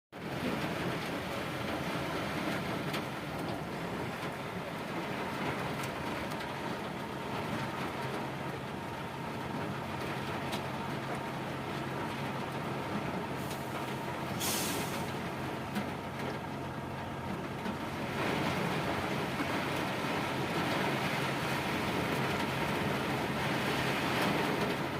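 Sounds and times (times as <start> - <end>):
heavy rain: 0.2 - 24.9
sharp hiss: 14.4 - 15.1.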